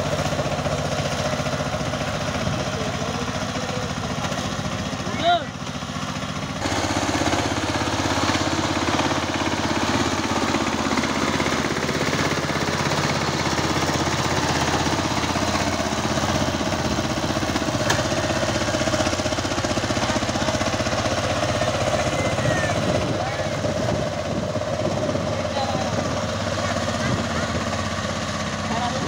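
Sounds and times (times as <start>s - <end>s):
power tiller engine running: 0.0s - 29.0s.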